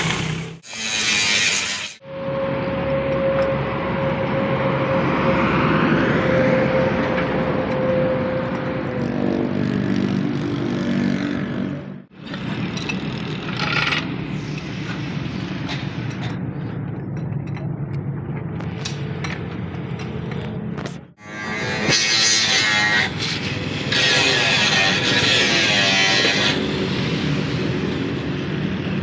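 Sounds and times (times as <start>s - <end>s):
car engine and road noise: 2.0s - 22.1s, 26.0s - 29.0s.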